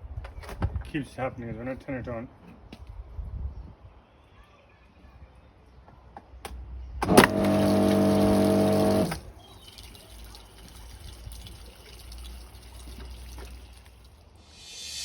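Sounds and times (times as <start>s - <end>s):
pressure washer motor humming: 7.0s - 9.2s
faint rush of water: 8.4s - 14.5s
water hissing: 12.5s - 15.0s.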